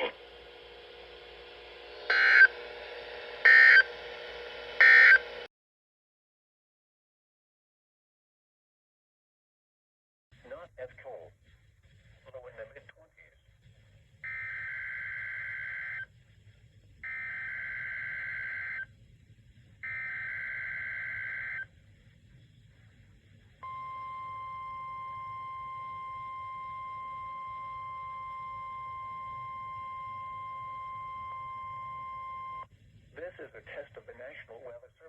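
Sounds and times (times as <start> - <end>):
steady warning alarm tone: 0.0 - 5.5, 14.2 - 16.1, 17.0 - 18.9, 19.8 - 21.7, 23.6 - 32.7
alert data bursts: 2.1 - 2.6, 3.4 - 4.0, 4.8 - 5.4, 17.1 - 18.8.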